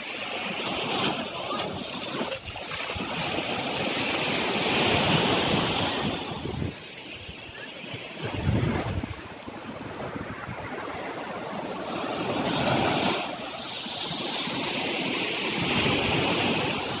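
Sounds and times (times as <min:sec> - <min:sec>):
surf washing onto beach: 0:00.0 - 0:17.0
wind buffeting microphone: 0:04.9 - 0:06.8, 0:08.2 - 0:11.2.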